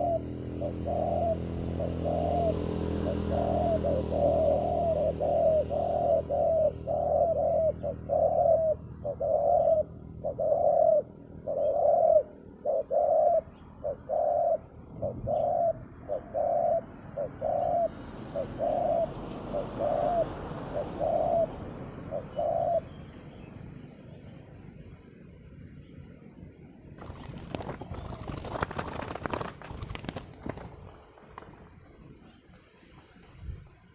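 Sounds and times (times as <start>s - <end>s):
doves cooing: 0.0s - 24.5s, 27.0s - 33.3s
small birds chirping: 0.0s - 33.9s.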